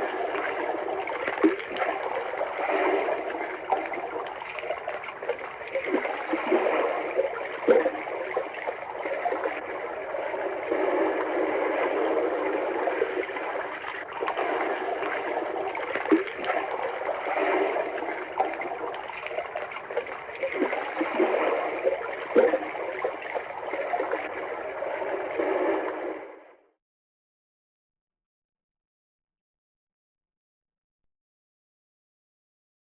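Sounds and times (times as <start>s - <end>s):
water pouring into water: 0.0s - 26.3s.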